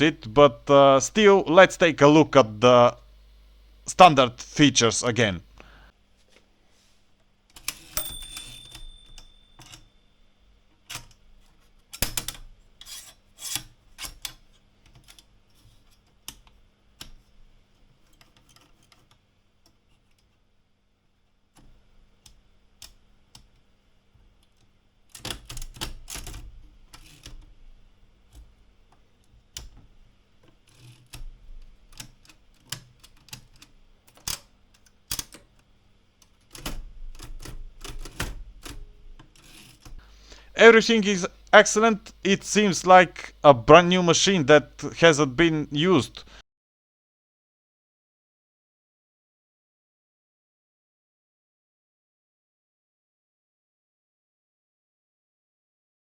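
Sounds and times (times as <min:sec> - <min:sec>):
typewriter clicks and clunks: 0:07.6 - 0:09.9, 0:11.9 - 0:12.5, 0:25.1 - 0:27.5, 0:36.4 - 0:40.0
typewriter bell ringing: 0:07.8 - 0:09.9.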